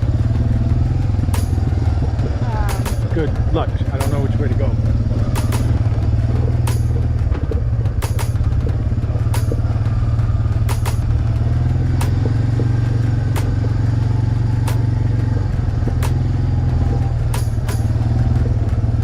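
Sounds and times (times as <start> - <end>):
quad bike engine running: 0.0 - 19.0
clacks and knocks over rocky ground: 5.3 - 9.7.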